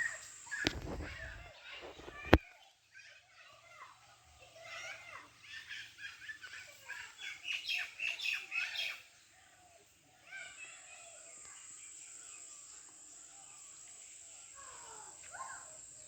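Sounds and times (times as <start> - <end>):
birds chirping: 0.0 - 2.4.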